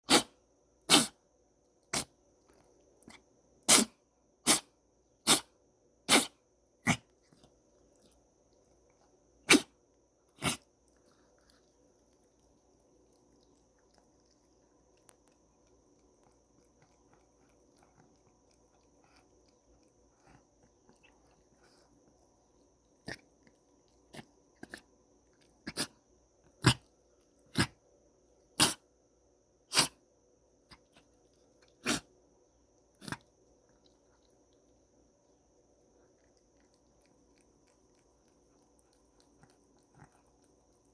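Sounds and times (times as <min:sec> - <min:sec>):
cat sneezing: 0:00.0 - 0:01.2, 0:03.7 - 0:05.5, 0:06.1 - 0:07.1, 0:09.4 - 0:09.7, 0:10.4 - 0:10.6, 0:25.7 - 0:25.9, 0:26.6 - 0:26.8, 0:27.5 - 0:27.7, 0:28.6 - 0:28.8, 0:29.7 - 0:30.0, 0:31.8 - 0:32.1.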